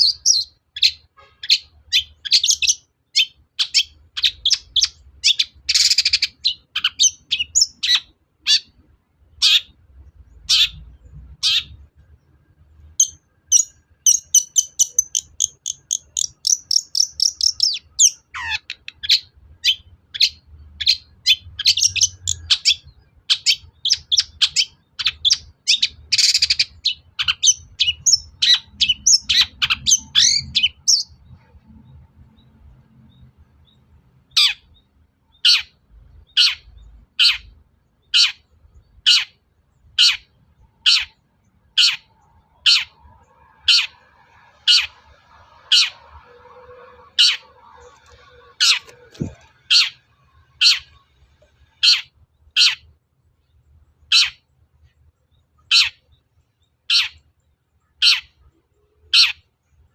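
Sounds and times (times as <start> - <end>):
bird rapid trill: 0.0 - 8.8, 12.9 - 31.5, 40.0 - 51.1, 51.7 - 52.9, 54.0 - 54.5, 55.6 - 56.2
harsh scratchy bird calls: 0.0 - 59.5
bird chirps and whistles: 13.0 - 31.2.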